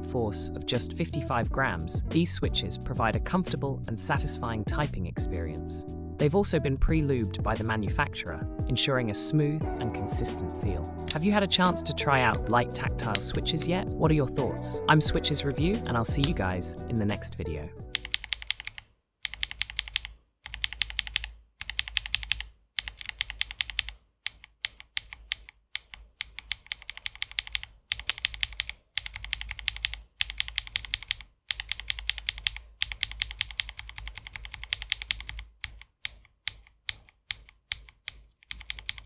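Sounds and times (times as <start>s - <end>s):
mechanical keyboard typing: 13.0s - 13.5s, 15.4s - 16.4s, 17.9s - 39.0s.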